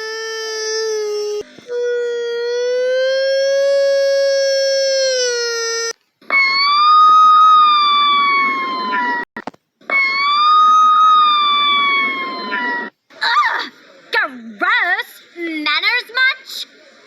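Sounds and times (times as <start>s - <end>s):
cartoon girl yawning: 0.0s - 9.2s.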